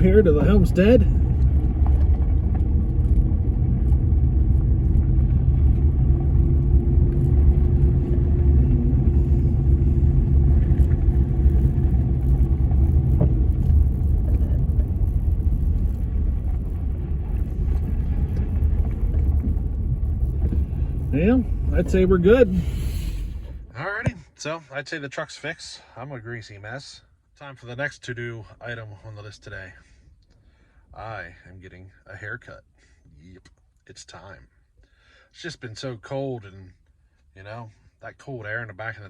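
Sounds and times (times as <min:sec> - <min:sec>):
truck engine and road rumble: 0:00.0 - 0:24.1.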